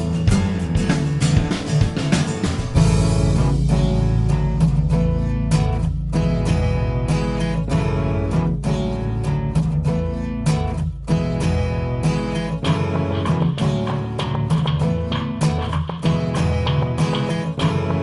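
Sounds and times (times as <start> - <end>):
steady low bass: 0.0 - 15.4
strummed acoustic guitar: 0.0 - 18.0.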